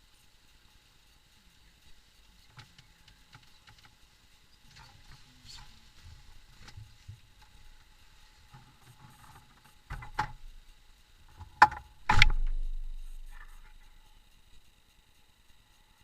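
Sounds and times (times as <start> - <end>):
knocks: 11.4 - 13.1
sharp click: 11.6 - 13.7
car door slamming: 12.1 - 12.6.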